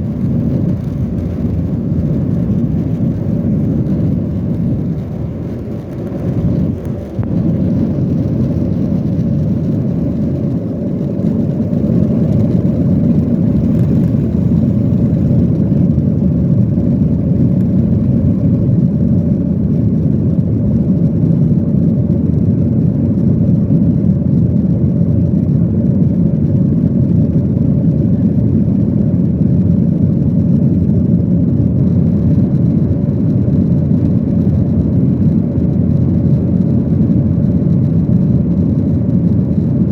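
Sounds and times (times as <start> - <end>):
airflow: 0.0 - 20.2
jet engine rumble: 0.0 - 39.9.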